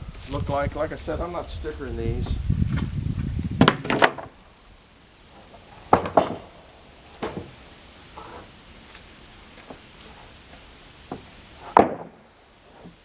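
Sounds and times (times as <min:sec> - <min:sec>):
wooden boards knocking: 0:03.6 - 0:04.4, 0:05.4 - 0:08.5, 0:11.0 - 0:13.0.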